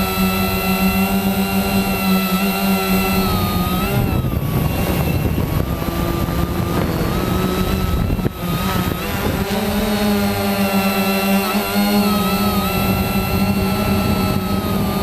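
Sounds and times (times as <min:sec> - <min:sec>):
drone propellers whining: 0:00.0 - 0:15.0
wind rumble: 0:03.2 - 0:10.4.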